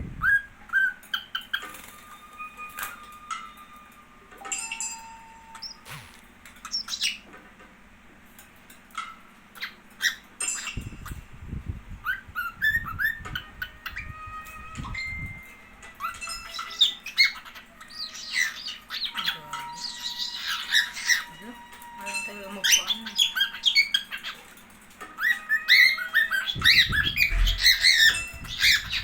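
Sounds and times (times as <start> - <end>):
cockatiel chirping and whistling: 5.6 - 7.2, 16.0 - 21.3, 22.6 - 24.4, 25.2 - 29.0.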